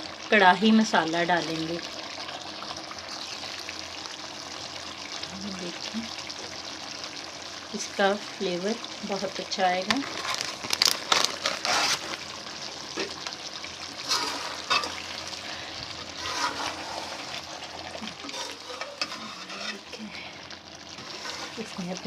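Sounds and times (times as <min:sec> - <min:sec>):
curry sizzling in hot oil: 0:00.0 - 0:22.0
spoon stirring and scraping pan: 0:11.3 - 0:12.2, 0:14.0 - 0:15.4, 0:16.1 - 0:20.0, 0:20.9 - 0:22.0.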